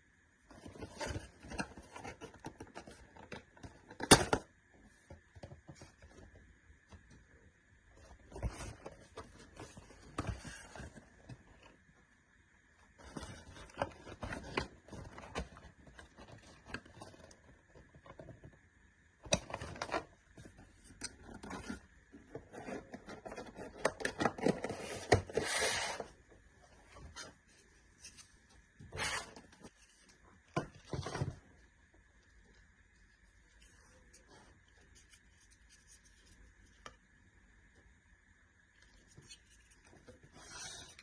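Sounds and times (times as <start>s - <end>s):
packaging rustling and scraping: 0.5s - 4.1s, 13.0s - 18.4s, 19.4s - 26.2s, 26.8s - 31.5s, 39.1s - 41.0s.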